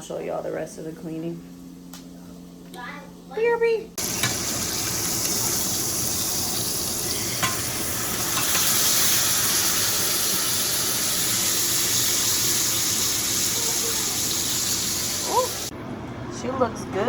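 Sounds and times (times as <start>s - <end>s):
steak sizzling in a pan: 4.0s - 15.7s.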